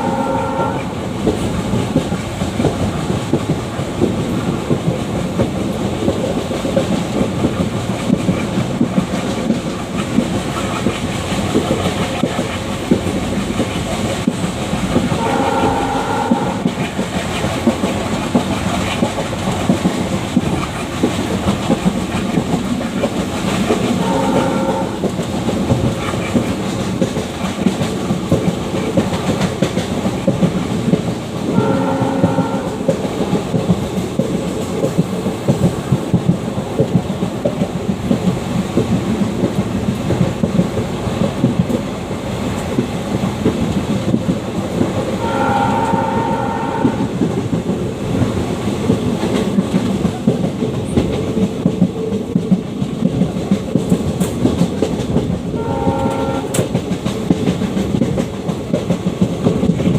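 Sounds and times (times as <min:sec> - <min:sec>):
locomotive horn blasts: 0:00.0 - 0:01.0, 0:15.2 - 0:16.7, 0:24.0 - 0:25.1, 0:31.5 - 0:32.9, 0:45.2 - 0:47.2, 0:55.6 - 0:56.7
diesel locomotive engine chugging: 0:00.0 - 0:59.9
wheels clattering over rails: 0:01.1 - 0:59.9.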